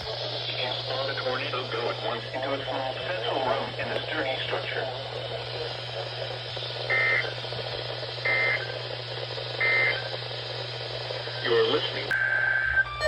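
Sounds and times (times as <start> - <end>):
low hum and hiss: 0.0 - 13.0
buzzing data bursts: 5.1 - 13.0.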